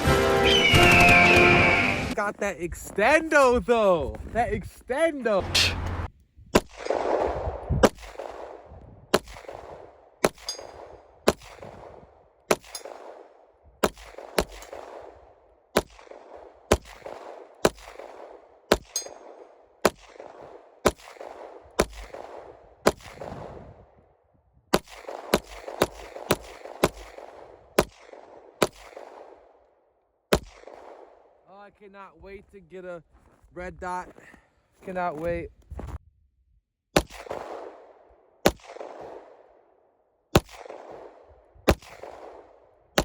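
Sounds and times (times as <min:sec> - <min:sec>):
gunshots with rolling echo: 0:00.0 - 0:02.2, 0:06.5 - 0:24.0, 0:24.7 - 0:31.4, 0:37.0 - 0:43.0.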